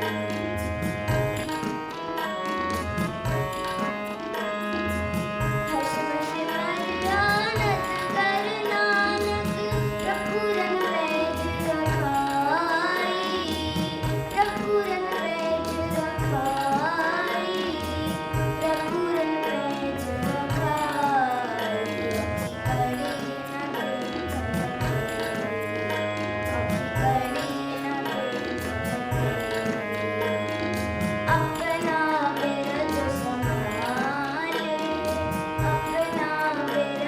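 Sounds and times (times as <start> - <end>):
steady drum rhythm: 0.0 - 19.2, 19.9 - 36.7
person singing ornamented melody: 5.6 - 25.9, 27.0 - 28.6, 31.3 - 37.0.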